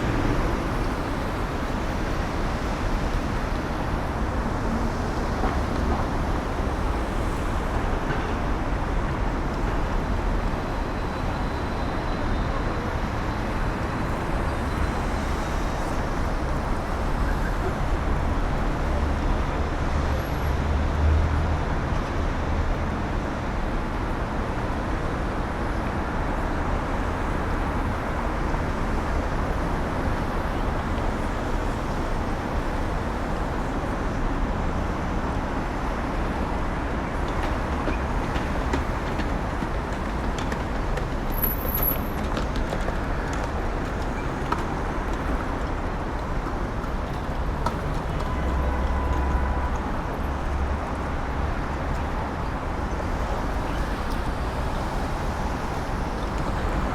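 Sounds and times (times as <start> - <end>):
traffic rumble and hiss: 0.0 - 56.9.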